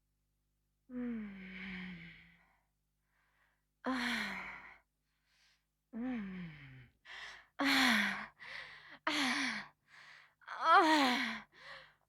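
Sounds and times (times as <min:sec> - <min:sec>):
woman breathing heavily: 0:06.2 - 0:10.4, 0:11.4 - 0:12.0.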